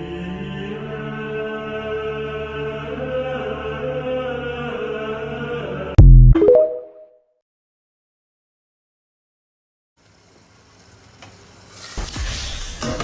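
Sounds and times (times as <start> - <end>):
chant-like droning music: 0.0 - 6.0.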